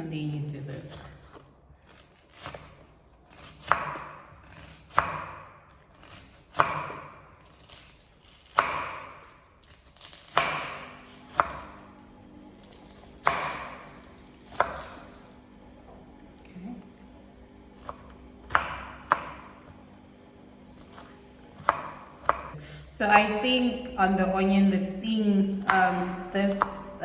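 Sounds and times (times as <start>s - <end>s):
knife slicing onion: 0.9s - 15.2s, 17.7s - 19.8s, 20.7s - 22.6s, 25.5s - 27.0s.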